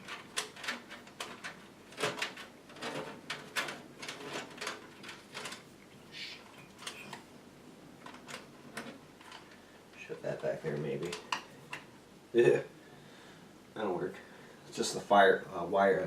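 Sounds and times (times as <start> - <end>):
hands rattling cables in computer case: 0.0 - 5.8, 8.0 - 9.6.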